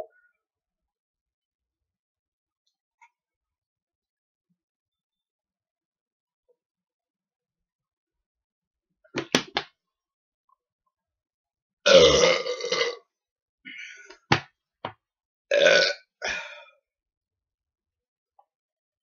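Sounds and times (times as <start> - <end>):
man belching loudly: 11.9 - 13.0, 15.5 - 16.0.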